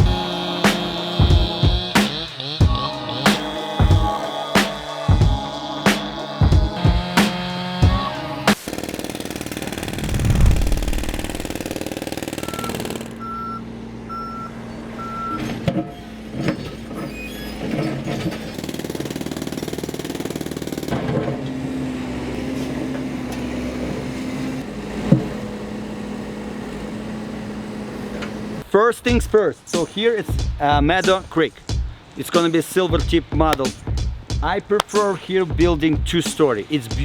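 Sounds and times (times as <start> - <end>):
heavy machine engine running: 0.0 - 13.4, 20.6 - 28.6
reversing alarm beeping: 12.4 - 16.0.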